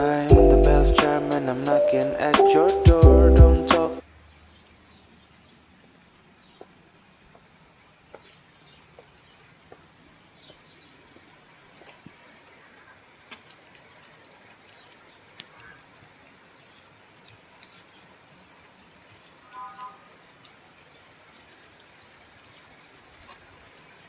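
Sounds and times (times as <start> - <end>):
light rain falling: 0.0 - 24.0
water drops ticking and dripping: 10.5 - 20.6.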